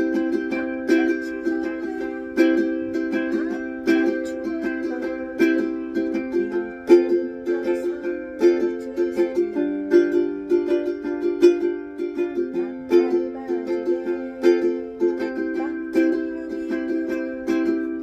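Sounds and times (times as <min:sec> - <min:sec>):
ukulele strumming chords: 0:00.0 - 0:18.0.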